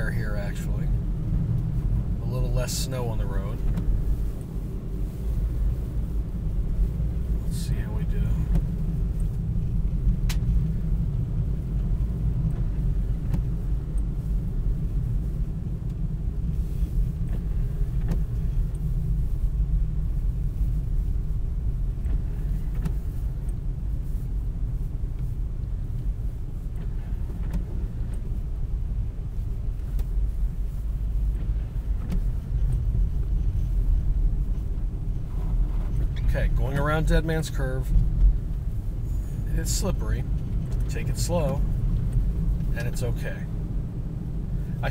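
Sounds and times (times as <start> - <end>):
vehicle rumble from inside cabin: 0.0 - 44.9
faint ticks: 22.0 - 24.3.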